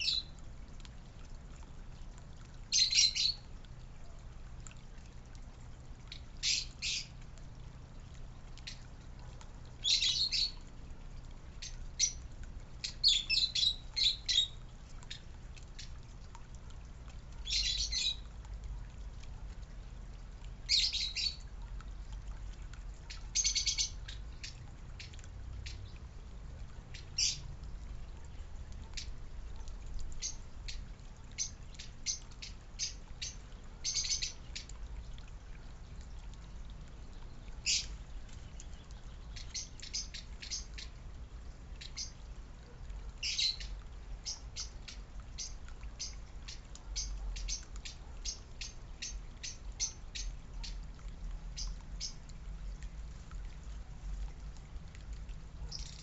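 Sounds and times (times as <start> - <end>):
small birds chirping: 0.0 - 0.4, 2.7 - 4.2, 6.1 - 7.2, 9.8 - 10.6, 11.6 - 16.0, 17.4 - 18.3, 20.7 - 21.6, 23.0 - 26.1, 26.9 - 27.5, 30.1 - 34.8, 36.6 - 41.0, 41.7 - 42.3, 43.2 - 50.8, 51.5 - 52.9, 55.6 - 56.0.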